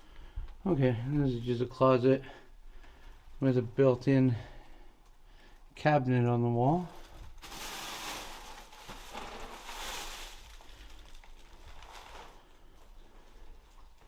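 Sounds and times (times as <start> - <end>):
rustling: 6.9 - 14.0.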